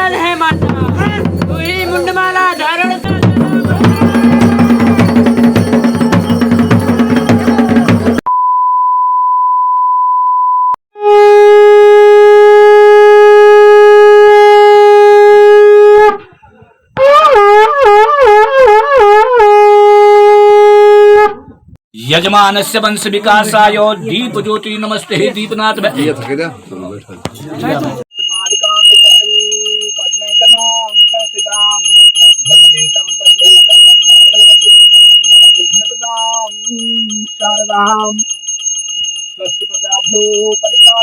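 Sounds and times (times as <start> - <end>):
music: 0.4 - 8.2
conch shell blown: 10.9 - 16.3, 17.0 - 21.4
electronic beep: 28.1 - 41.0.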